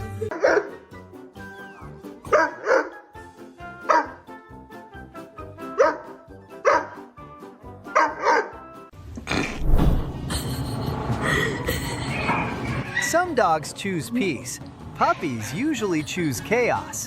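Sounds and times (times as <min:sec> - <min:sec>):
background music: 0:00.0 - 0:17.0
dog barking: 0:00.3 - 0:00.8, 0:02.3 - 0:03.0, 0:03.8 - 0:04.2, 0:05.8 - 0:07.1, 0:07.9 - 0:08.6.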